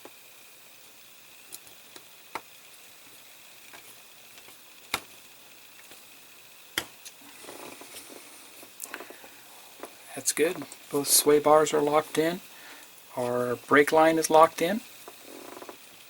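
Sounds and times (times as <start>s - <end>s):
sharp clicks and taps: 6.8s - 7.2s.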